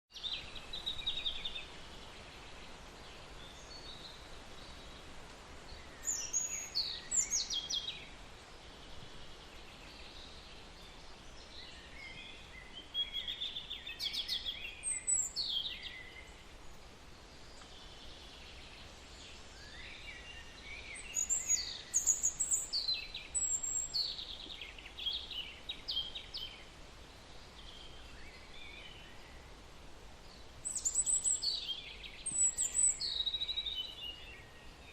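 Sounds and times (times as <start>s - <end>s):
steady background hiss: 0.1s - 34.9s
birds chirping and singing: 5.7s - 8.1s, 11.4s - 16.8s, 17.4s - 26.8s, 30.3s - 34.9s.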